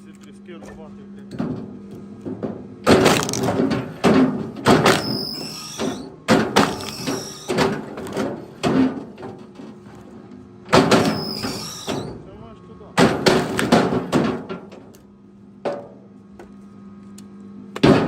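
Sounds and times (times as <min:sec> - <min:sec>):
firewood knocks and cracks: 0:01.4 - 0:10.0, 0:13.0 - 0:15.0, 0:17.7 - 0:18.0
high squeal or ring: 0:05.0 - 0:06.1, 0:11.1 - 0:12.2.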